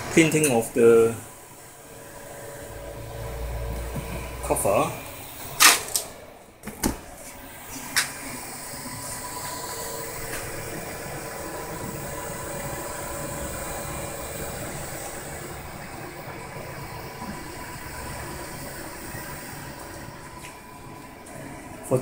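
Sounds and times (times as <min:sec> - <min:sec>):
printer mechanical whir: 0:00.0 - 0:22.0.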